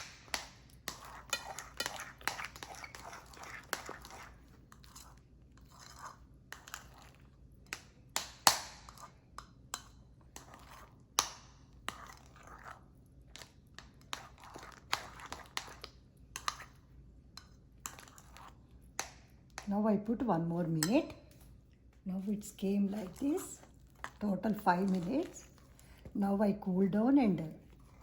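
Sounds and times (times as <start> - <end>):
spoon scraping a bowl: 0.8 - 7.3, 8.8 - 9.2, 9.8 - 11.0, 11.8 - 16.8, 17.4 - 18.6, 20.2 - 21.2, 22.2 - 26.2.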